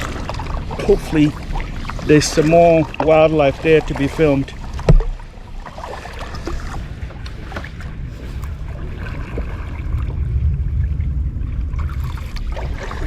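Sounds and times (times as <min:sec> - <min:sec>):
paddle splashing in water: 0:00.0 - 0:13.0
low rumble: 0:04.0 - 0:13.0.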